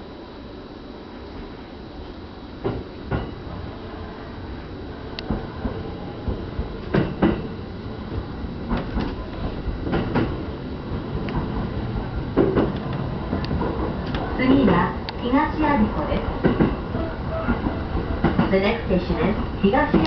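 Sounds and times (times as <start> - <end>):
electric train rumbling: 0.0 - 20.0.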